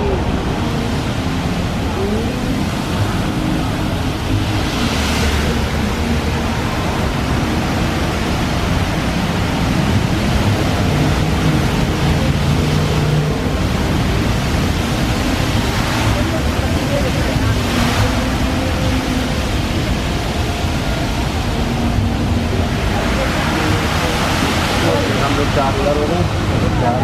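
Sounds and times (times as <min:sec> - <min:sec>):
fountain jets splashing: 0:00.0 - 0:27.0.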